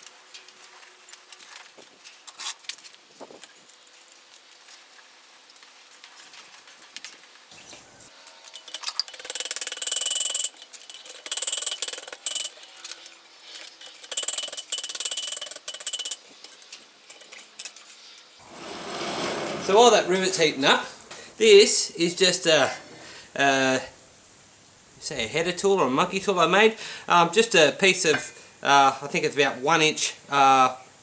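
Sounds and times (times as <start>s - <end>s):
file rasping on steel: 18.4s - 21.0s.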